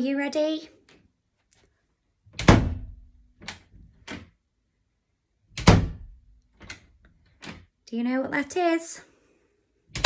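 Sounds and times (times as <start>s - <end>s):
door shutting thud: 2.4s - 2.9s, 5.6s - 6.1s.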